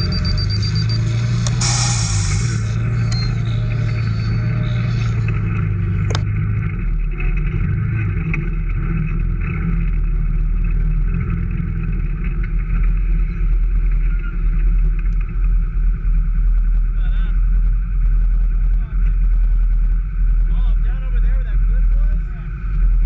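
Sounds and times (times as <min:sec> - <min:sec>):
off-road vehicle engine running: 0:00.0 - 0:23.0.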